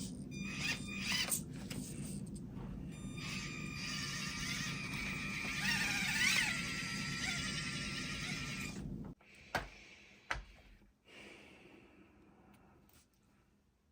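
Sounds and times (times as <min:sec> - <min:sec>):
small electric motor whining: 0:00.0 - 0:02.3, 0:02.9 - 0:09.2.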